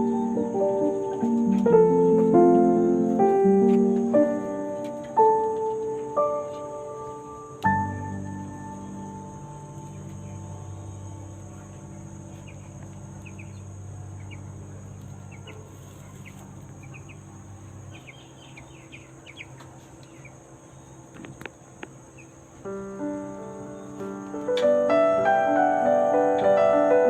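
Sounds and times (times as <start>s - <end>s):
high insect drone: 0.0s - 27.0s
high bird chirps: 12.3s - 21.0s.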